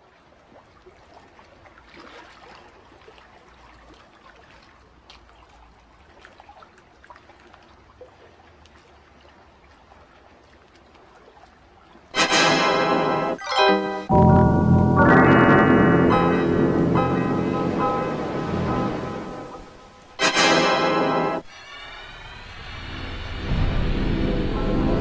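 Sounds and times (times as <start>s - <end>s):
faint trickling water: 0.0s - 12.2s
water drips and splashes: 0.0s - 12.4s.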